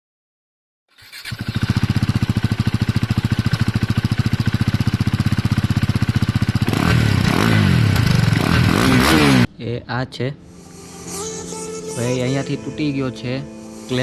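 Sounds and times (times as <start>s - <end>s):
motorcycle engine idling and revving: 1.0s - 9.5s.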